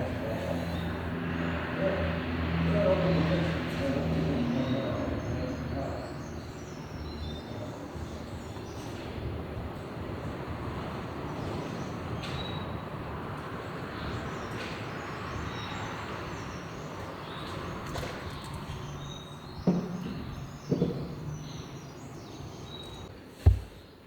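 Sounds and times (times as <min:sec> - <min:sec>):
sharp knocks: 0:19.6 - 0:21.6, 0:23.4 - 0:24.0.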